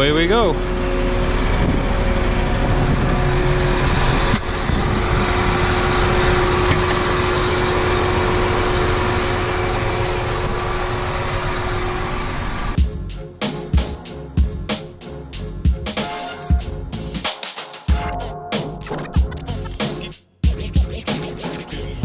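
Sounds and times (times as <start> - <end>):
farm vehicle engine running: 0.0 - 15.8
steady whine: 0.0 - 17.2.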